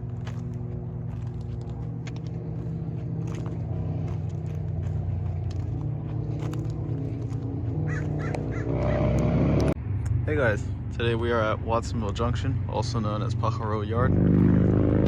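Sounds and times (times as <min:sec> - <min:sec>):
crunching footsteps: 0:00.0 - 0:09.2.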